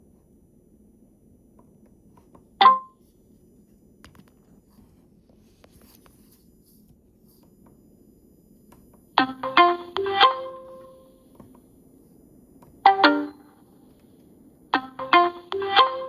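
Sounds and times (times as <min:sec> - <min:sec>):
short electronic beep: 0:02.6 - 0:03.0.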